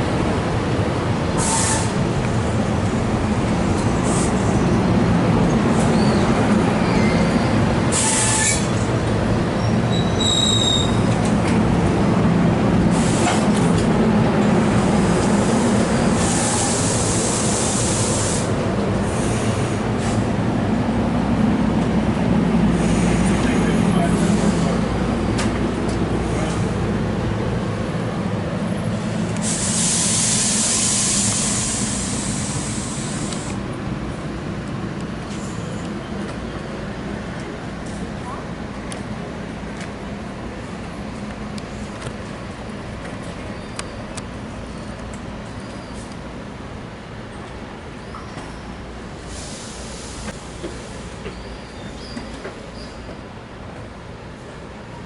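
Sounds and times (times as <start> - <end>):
train wheels rumbling: 0.0 - 55.0
high-pitched wheel squeal: 9.6 - 11.1
compressed air hissing: 12.9 - 13.5, 15.4 - 20.3, 29.4 - 33.6, 49.2 - 51.1.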